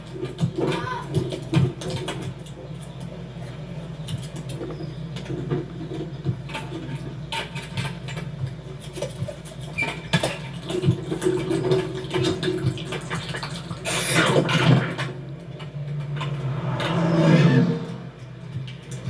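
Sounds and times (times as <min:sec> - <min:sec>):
steady low hum: 0:14.5 - 0:19.0
loud whoosh of something passing: 0:15.9 - 0:18.7.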